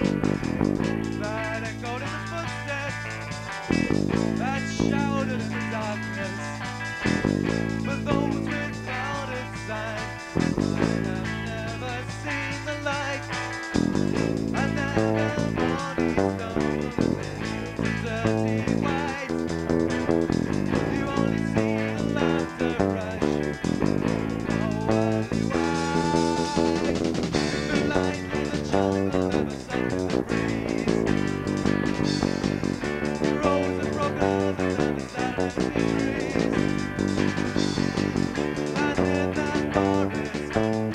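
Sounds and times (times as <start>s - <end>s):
rock band playing live: 0.0s - 40.9s
wavering lead guitar line: 0.0s - 40.9s.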